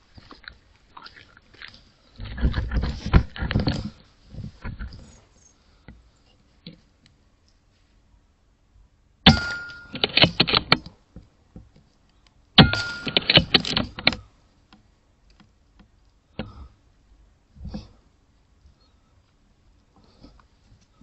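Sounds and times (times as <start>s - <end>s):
air rifle shots: 9.3s - 10.7s, 12.6s - 13.8s
rapid clicking and clatter: 12.6s - 14.2s.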